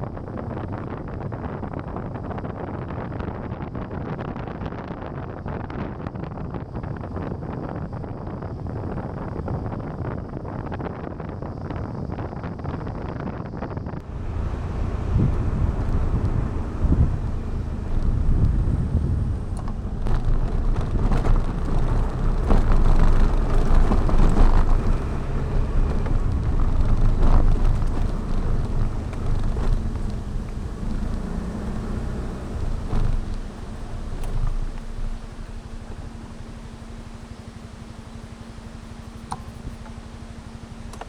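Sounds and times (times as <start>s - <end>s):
wind buffeting microphone: 0.0s - 40.5s
scooter engine running: 14.0s - 41.0s.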